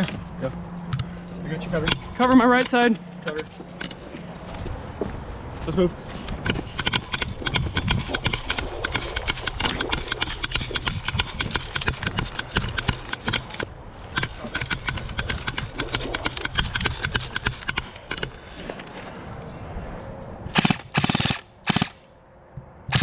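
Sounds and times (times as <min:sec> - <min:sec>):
footsteps crunching on rough ground: 0:00.0 - 0:01.2, 0:02.0 - 0:10.1.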